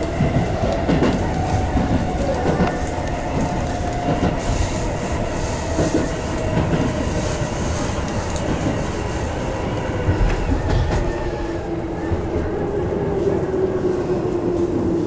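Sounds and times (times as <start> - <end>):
wheels clicking over rail joints: 0.0 - 13.7
train wheel rumble: 0.0 - 15.0.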